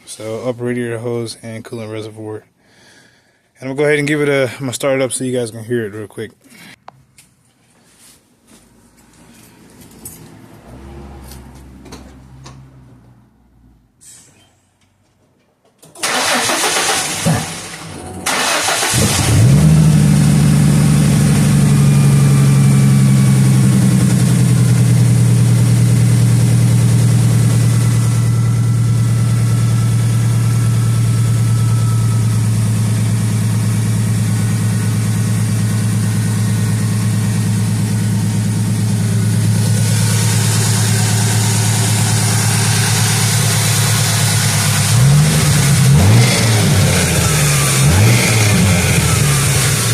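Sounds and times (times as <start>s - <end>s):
car engine starter cranking: 15.8s - 19.9s
car engine idling: 16.0s - 49.9s
car engine revving: 16.0s - 49.9s.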